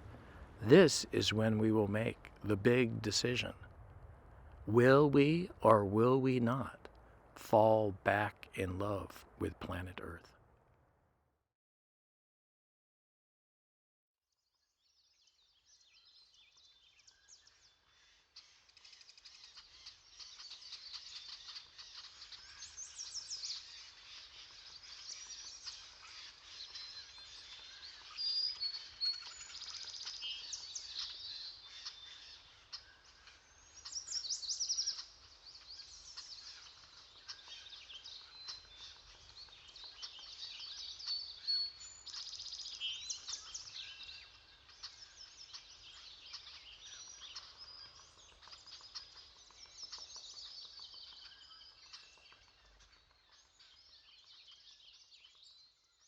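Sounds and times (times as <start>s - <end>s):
songbirds singing: 19.7s - 55.8s.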